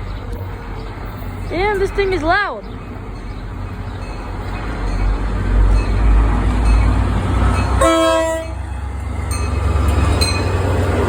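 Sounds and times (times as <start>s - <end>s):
diesel train rumbling: 0.0s - 11.0s
train horn blast: 7.8s - 8.7s.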